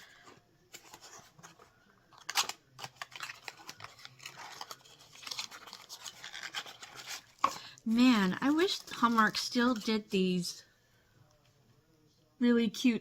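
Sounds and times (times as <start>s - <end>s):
cardboard packaging rustling: 0.7s - 9.8s.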